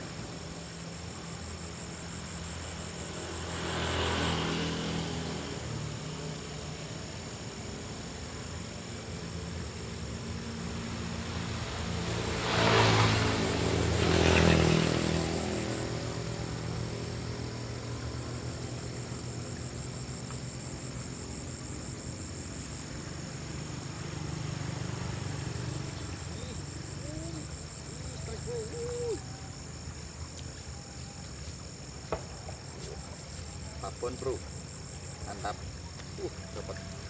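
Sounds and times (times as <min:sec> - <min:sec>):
crickets chirring: 0:00.0 - 0:37.0
passing vehicle engine: 0:00.7 - 0:08.0, 0:10.2 - 0:29.9.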